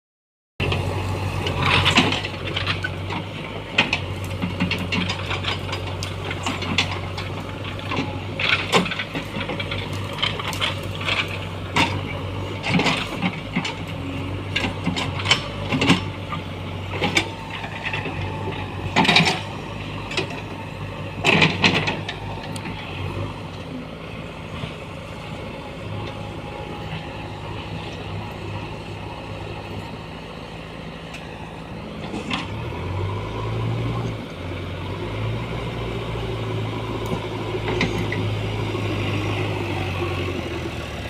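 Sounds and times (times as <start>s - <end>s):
diesel engine running: 0.6s - 41.0s
clanks and cracks: 3.8s - 12.0s.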